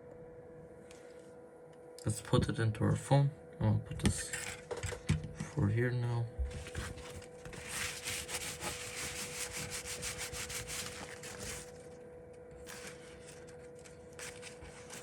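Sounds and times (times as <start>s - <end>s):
phone parts rubbing and scraping: 4.1s - 5.5s, 6.5s - 12.0s, 12.6s - 15.0s.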